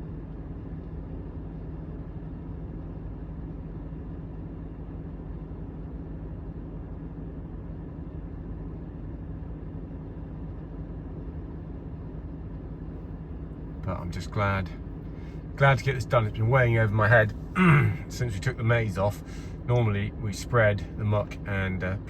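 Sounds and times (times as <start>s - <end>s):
engine running steadily: 13.0s - 22.0s.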